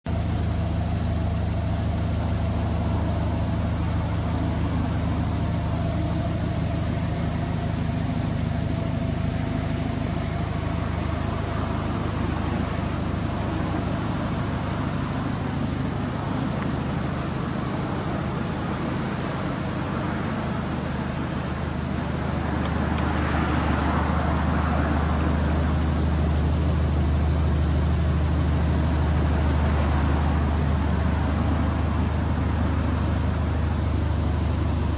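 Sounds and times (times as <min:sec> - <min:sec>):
car engine idling: 0:00.0 - 0:34.9
click: 0:22.6 - 0:23.1.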